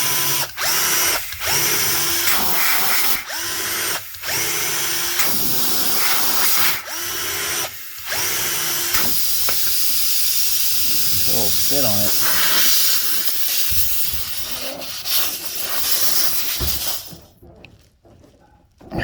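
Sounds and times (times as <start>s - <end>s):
power drill motor whine: 0.0s - 14.5s.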